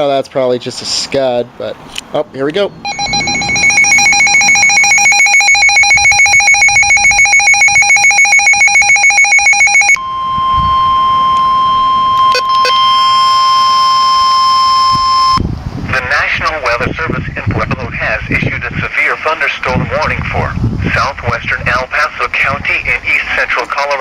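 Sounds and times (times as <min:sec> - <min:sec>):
rapid beeping alarm: 0:02.8 - 0:15.4
steady alarm tone: 0:02.8 - 0:15.4.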